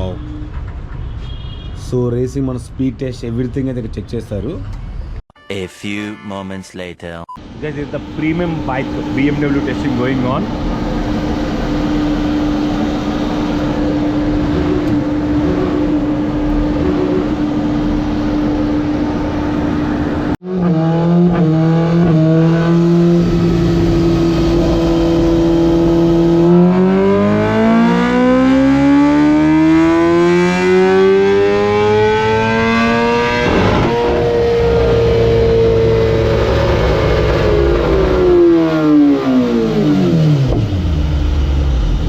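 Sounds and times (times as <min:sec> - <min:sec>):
motorcycle engine revving: 0:08.2 - 0:42.0.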